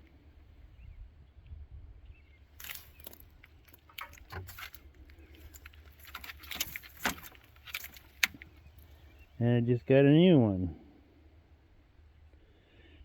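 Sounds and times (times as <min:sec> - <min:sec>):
small parts clicking and rattling: 0:02.6 - 0:08.6.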